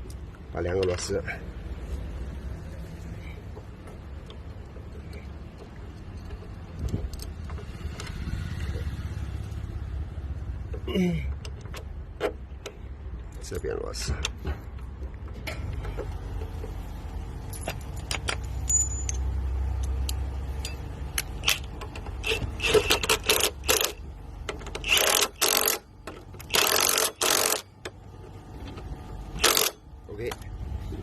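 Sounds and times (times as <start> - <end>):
metal tools clicking: 17.5 - 24.0, 24.6 - 27.8, 29.4 - 30.5
ratchet bursts: 21.2 - 24.0, 24.6 - 27.8, 29.4 - 29.8.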